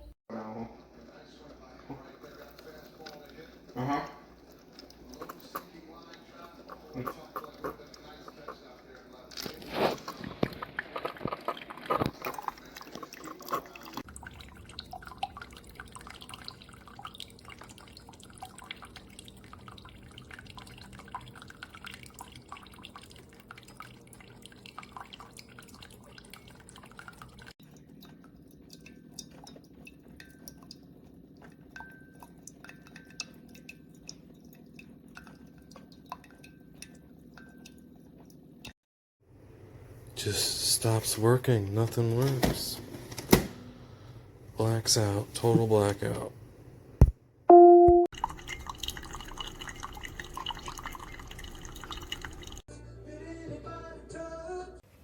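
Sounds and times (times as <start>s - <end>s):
coffee dripping: 0.9s - 3.8s, 4.4s - 38.8s, 48.1s - 52.7s
coffee maker humming: 48.2s - 52.6s.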